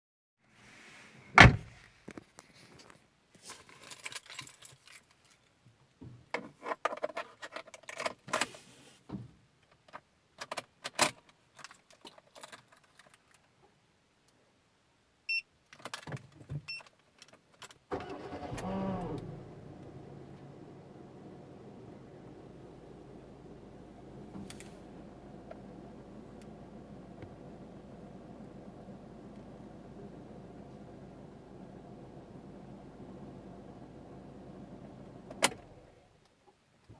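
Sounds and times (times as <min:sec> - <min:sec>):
car engine starting and idling: 0:17.9 - 0:36.0.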